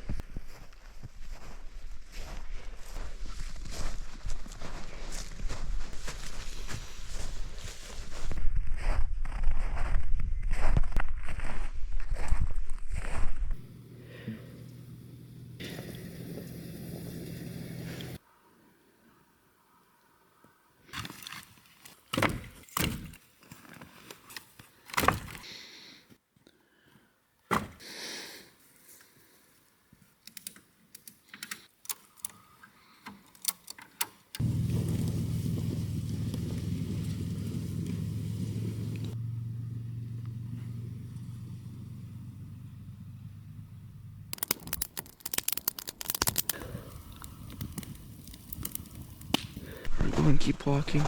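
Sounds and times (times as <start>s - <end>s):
footsteps crunching in snow: 0.0s - 13.6s, 34.4s - 39.2s
low steady rumble: 34.4s - 44.4s.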